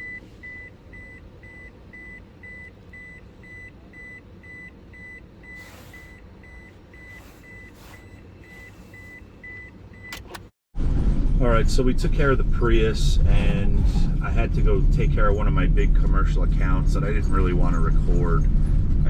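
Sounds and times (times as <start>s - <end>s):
faint handling noise: 5.5s - 10.5s.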